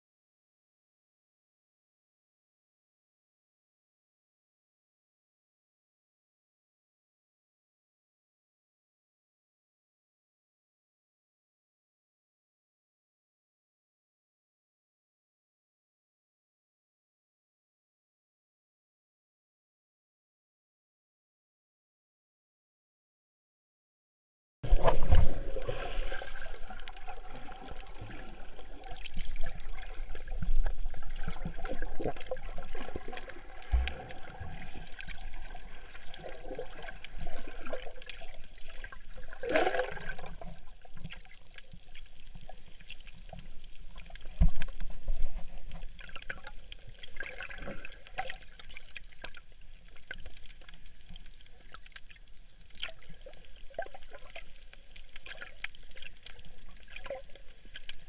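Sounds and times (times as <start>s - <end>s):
water pouring and sloshing: 24.6s - 58.0s
water trickling and gurgling: 24.7s - 58.0s.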